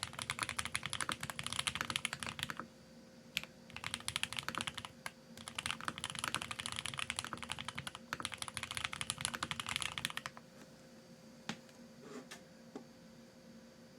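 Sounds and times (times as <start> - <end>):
mechanical keyboard typing: 0.0 - 2.6, 3.4 - 10.4.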